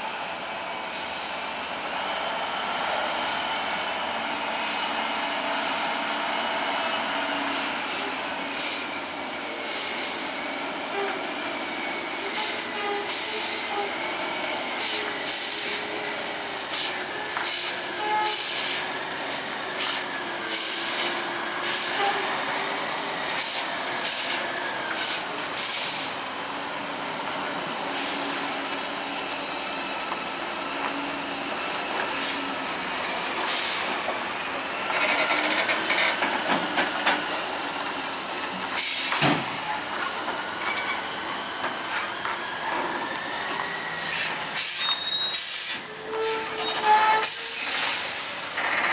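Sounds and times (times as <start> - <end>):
air brake hisses: 0.9 - 1.4, 4.2 - 5.9, 7.4 - 10.4, 12.0 - 26.2, 27.8 - 28.5, 29.1 - 34.0, 35.8 - 48.7.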